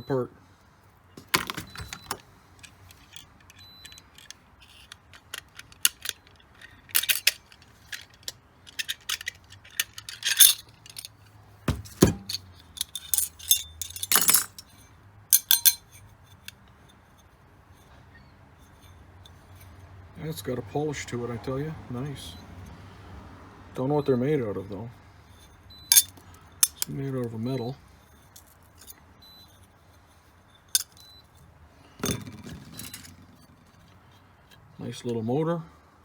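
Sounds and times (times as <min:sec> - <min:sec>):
metal parts clinking and scraping: 0:01.2 - 0:18.0, 0:18.6 - 0:19.9, 0:25.2 - 0:35.3
heavier metal knocks: 0:11.7 - 0:12.3.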